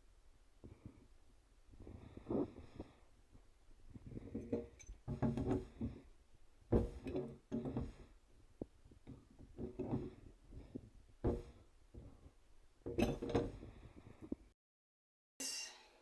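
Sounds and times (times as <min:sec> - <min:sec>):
metal fittings clinking and scraping: 0:12.9 - 0:13.7.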